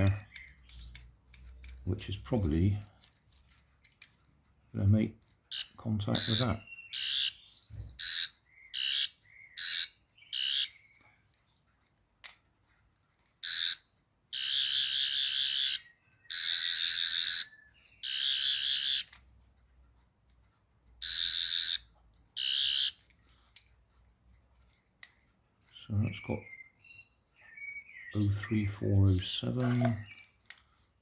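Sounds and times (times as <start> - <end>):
toy electronic warbling buzz: 8.0 - 10.7, 13.4 - 13.8, 14.4 - 17.5, 21.0 - 23.0.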